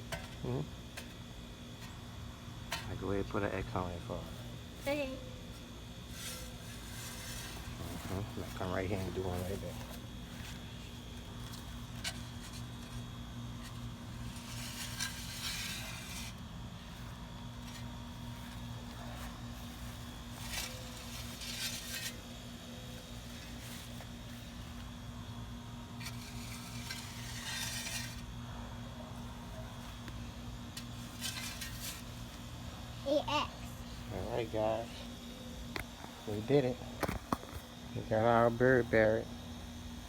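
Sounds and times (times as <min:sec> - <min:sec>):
steady low hum: 0:00.0 - 0:40.0
scraping strokes in loose soil: 0:04.2 - 0:25.1, 0:25.8 - 0:32.5.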